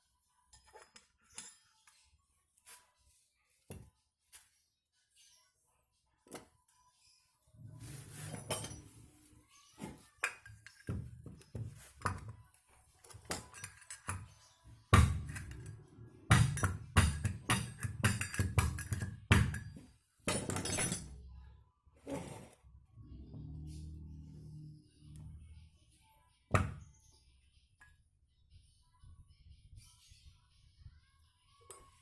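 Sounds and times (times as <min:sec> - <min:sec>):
low bass: 0:22.9 - 0:25.8.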